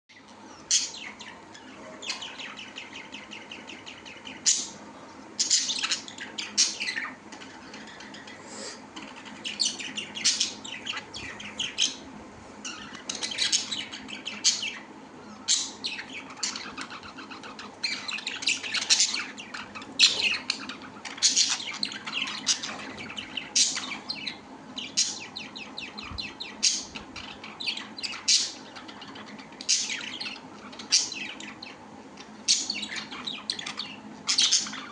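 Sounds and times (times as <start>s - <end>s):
pet birds chirping and squawking: 0.1s - 34.9s.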